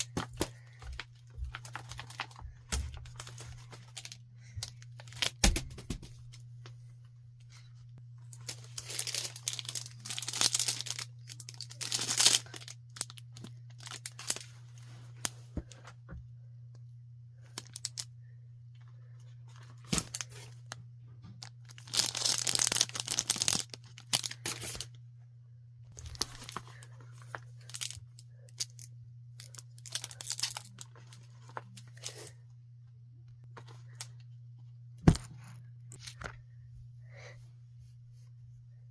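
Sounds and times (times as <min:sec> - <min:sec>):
low electrical hum: 0:00.0 - 0:38.9
paper tearing and crinkling: 0:08.4 - 0:13.2, 0:21.7 - 0:24.9.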